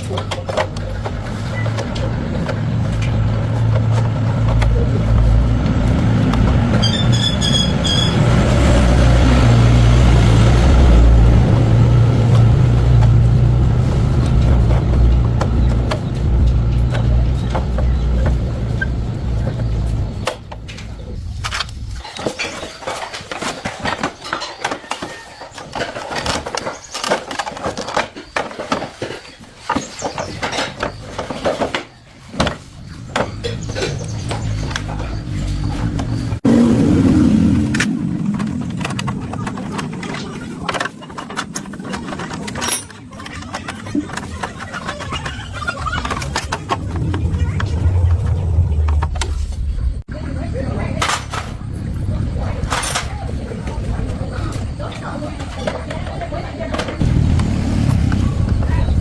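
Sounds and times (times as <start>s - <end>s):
clicks and knocks of work: 0.0s - 8.3s, 20.2s - 36.4s, 37.7s - 47.9s
motorcycle engine running: 57.0s - 59.0s.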